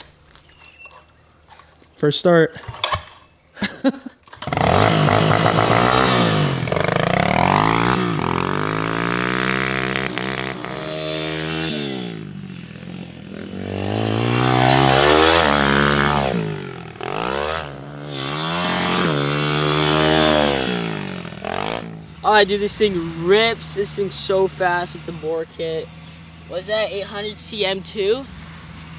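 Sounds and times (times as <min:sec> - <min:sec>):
small motorbike engine revving: 0:04.3 - 0:27.6.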